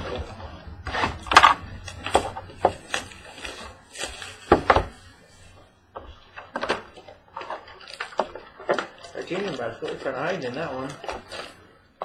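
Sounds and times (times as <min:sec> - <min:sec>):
card pack wrapper rustling: 0:01.2 - 0:04.6.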